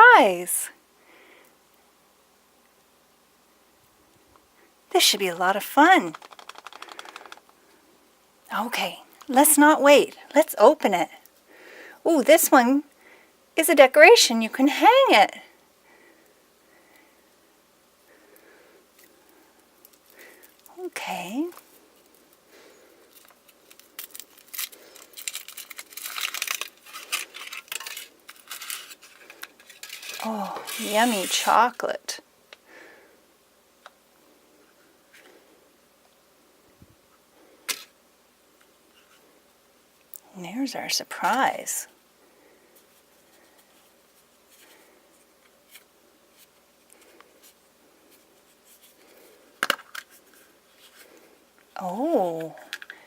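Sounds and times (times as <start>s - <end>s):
foil wrapper crinkling: 6.0s - 7.5s, 23.1s - 31.5s
light clicks of plastic parts: 52.6s - 53.0s.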